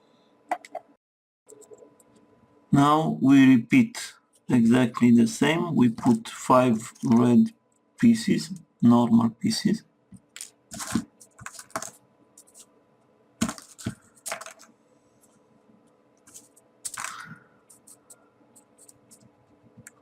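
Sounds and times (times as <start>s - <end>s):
paper rustling: 5.9s - 7.3s, 10.4s - 12.7s, 13.4s - 14.7s, 16.3s - 18.1s
paper pieces clicking: 10.3s - 12.6s, 13.4s - 14.7s, 16.3s - 18.1s.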